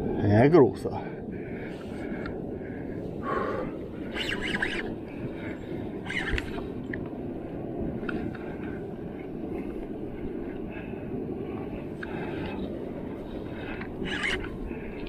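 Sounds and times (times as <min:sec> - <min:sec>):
sea: 0:00.0 - 0:15.0
wind: 0:00.0 - 0:15.0.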